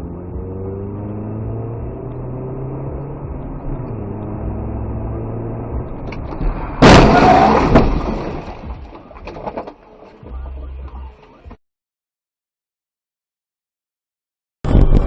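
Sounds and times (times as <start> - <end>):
car engine and road noise: 0.0 - 11.6
car crash impact: 6.0 - 9.8.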